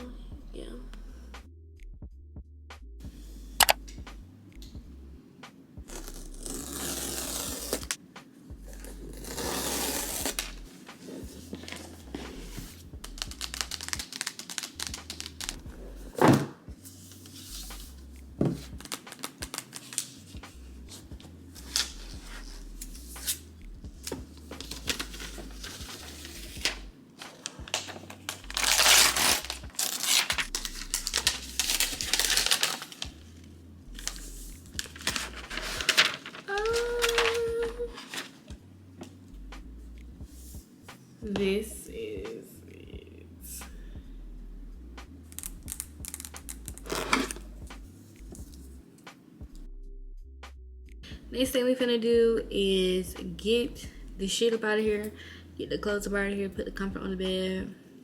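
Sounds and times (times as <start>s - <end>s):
crinkling and rustling: 7.1s - 39.2s, 45.3s - 48.7s.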